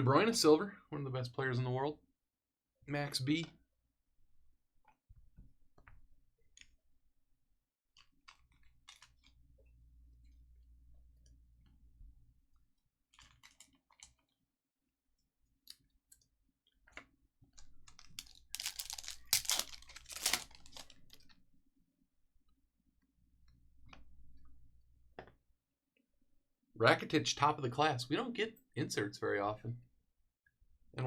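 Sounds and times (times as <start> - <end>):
card pack wrappers crinkling: 17.8 - 21.3
wrapper tearing: 17.9 - 21.2
cards being handled: 17.9 - 21.3.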